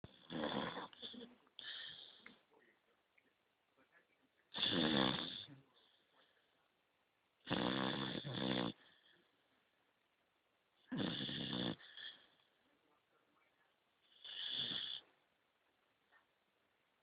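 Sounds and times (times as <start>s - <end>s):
puppy snoring: 0.1s - 2.4s, 4.5s - 6.1s, 7.4s - 9.2s, 10.8s - 12.5s, 14.0s - 15.1s.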